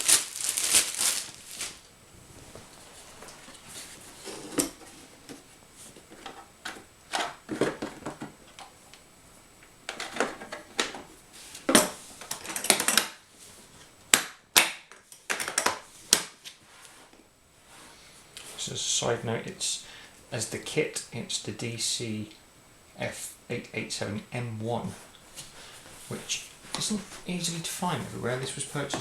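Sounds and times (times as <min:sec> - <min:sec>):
packaging rustling: 0:00.0 - 0:03.6.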